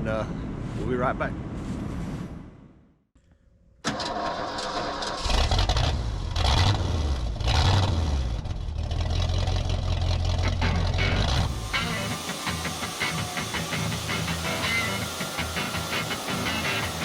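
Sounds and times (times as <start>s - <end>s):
heavy machine engine revving: 5.1s - 17.0s.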